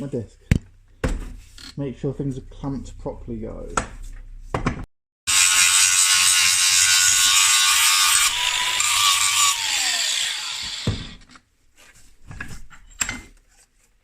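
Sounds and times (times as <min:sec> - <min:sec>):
angle grinder grinding metal: 0:05.3 - 0:11.3.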